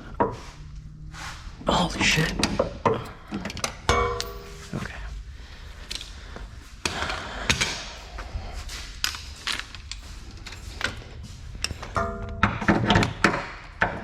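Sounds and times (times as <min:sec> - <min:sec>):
hand tools knocking on metal: 0:03.9 - 0:04.8.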